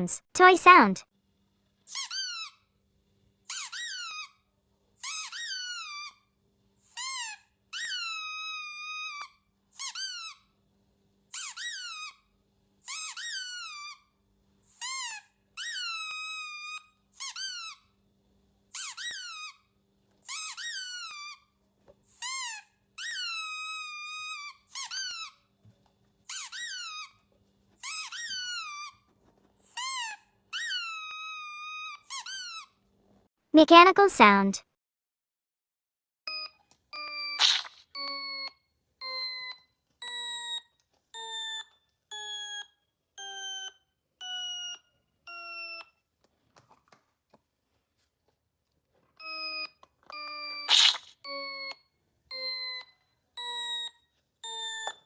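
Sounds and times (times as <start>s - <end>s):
squeaky toy squeaking: 1.9s - 2.6s, 3.5s - 4.4s, 5.0s - 6.2s, 6.8s - 10.5s, 11.3s - 17.9s, 18.7s - 19.6s, 20.2s - 21.5s, 22.1s - 25.5s, 26.3s - 27.2s, 27.8s - 29.0s, 29.6s - 32.8s, 37.1s - 38.5s, 49.2s - 52.9s.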